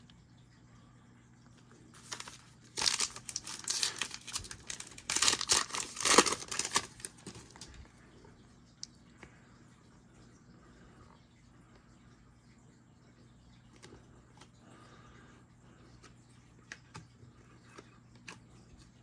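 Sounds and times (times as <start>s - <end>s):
wrapper tearing and crinkling: 2.0s - 7.7s.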